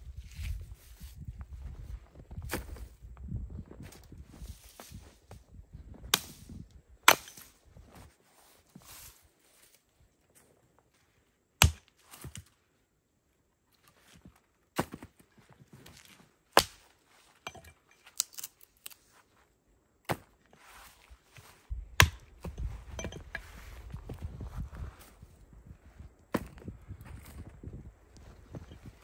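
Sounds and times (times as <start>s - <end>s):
axe chopping wood: 7.1s - 7.5s, 11.6s - 12.5s, 16.6s - 16.9s, 20.1s - 20.3s, 21.7s - 23.5s, 26.3s - 26.6s.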